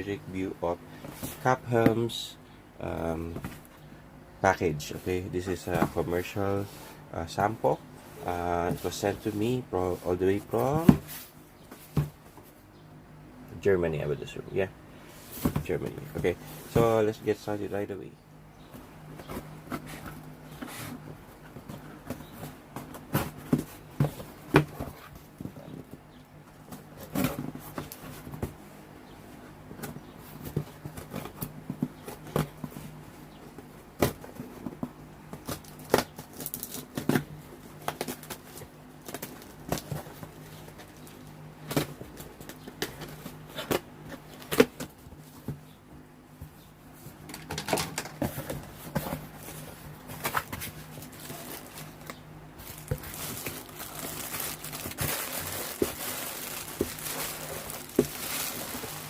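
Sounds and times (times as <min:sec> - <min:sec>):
packaging crinkling and clicking: 0:50.2 - 0:59.0.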